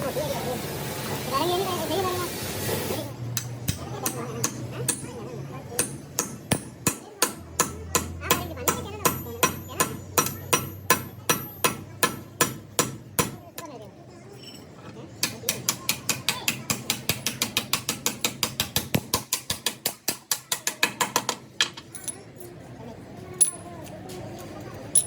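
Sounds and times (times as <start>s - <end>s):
hammer striking metal: 3.4s - 5.2s, 5.8s - 13.4s.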